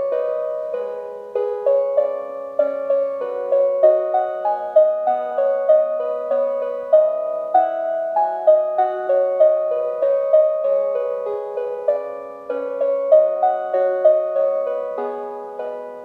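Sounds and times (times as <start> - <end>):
plucked piano-like melody: 0.0 - 16.0.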